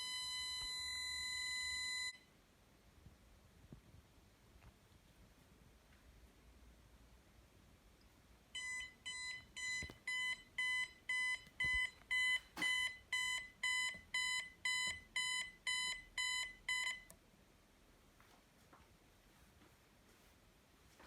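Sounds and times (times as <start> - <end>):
burglar alarm pulsing beep: 0.0 - 2.2, 8.6 - 17.1.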